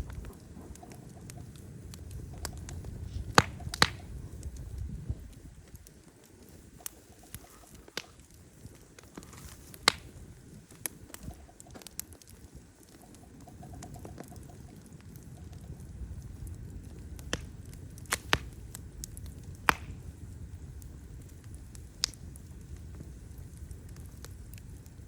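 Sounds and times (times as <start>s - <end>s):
low rumble: 0.0s - 5.7s
wood fire crackling: 0.0s - 25.0s.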